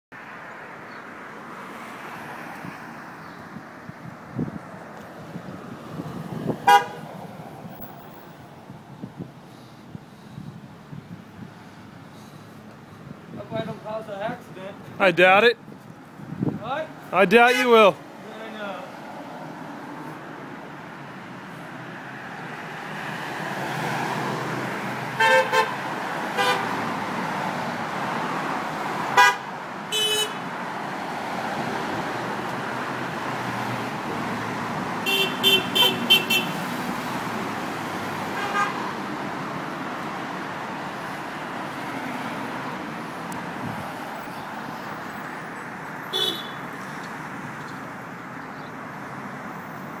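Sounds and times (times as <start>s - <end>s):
cars passing on road: 0.1s - 50.0s
car horns tooting: 6.6s - 7.0s, 17.2s - 18.0s, 25.2s - 25.8s, 26.4s - 26.7s, 29.1s - 30.4s, 35.0s - 36.6s, 38.4s - 38.9s, 46.1s - 46.7s.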